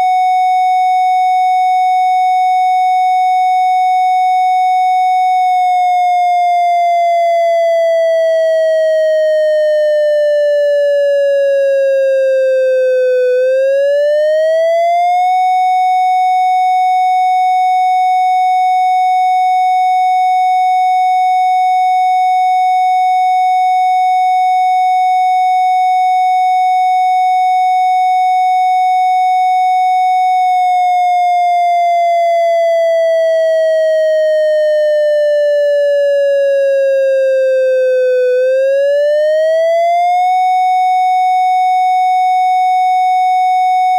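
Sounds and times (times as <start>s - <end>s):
synthesized siren tone: 5.4s - 15.6s, 30.2s - 41.1s.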